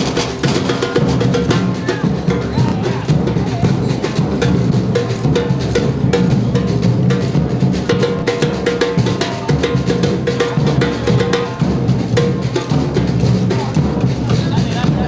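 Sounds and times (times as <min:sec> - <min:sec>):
drum band playing: 0:00.0 - 0:15.0.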